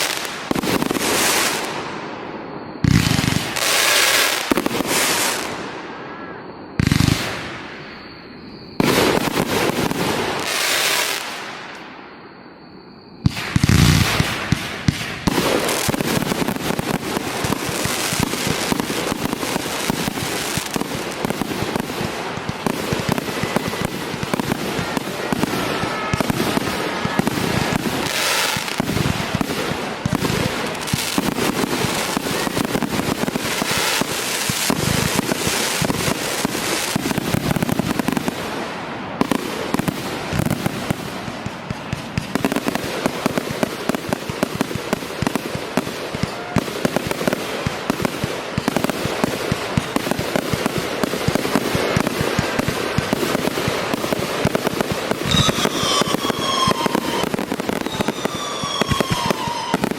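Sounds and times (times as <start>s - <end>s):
fireworks cracks and bangs: 0.0s - 59.9s
high falling whistles: 1.3s - 14.6s, 55.2s - 59.9s.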